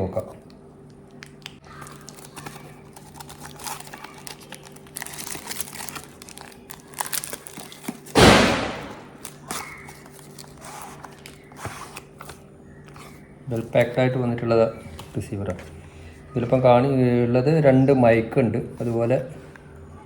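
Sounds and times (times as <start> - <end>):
packaging crinkling: 1.2 - 13.9
loud packaging rip: 3.0 - 9.4.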